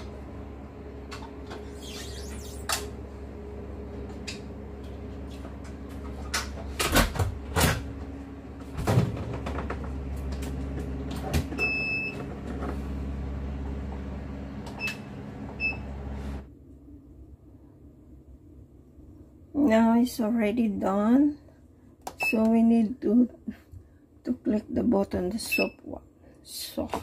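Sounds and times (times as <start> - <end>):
electrical hum: 0.0 - 27.0
control panel beeps: 25.4 - 25.8.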